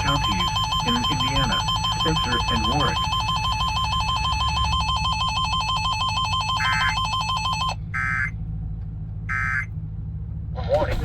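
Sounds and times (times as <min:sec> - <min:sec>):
warbling electronic alert tone: 0:00.0 - 0:08.3, 0:09.3 - 0:09.7.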